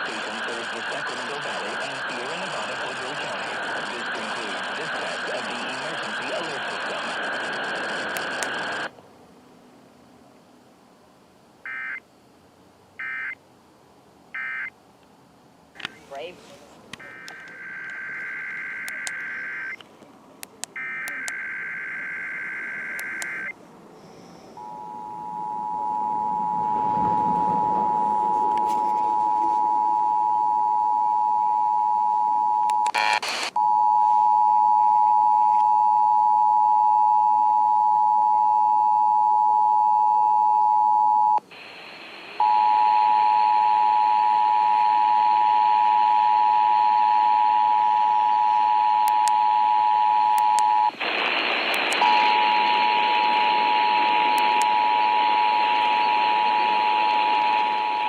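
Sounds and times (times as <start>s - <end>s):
two-tone attention signal: 24.6s - 31.5s.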